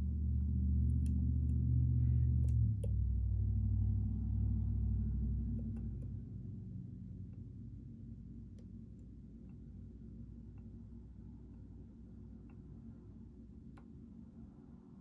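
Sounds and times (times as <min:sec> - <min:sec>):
steady low hum: 0:00.0 - 0:15.0
faint small clicks: 0:02.4 - 0:03.0, 0:13.7 - 0:14.0.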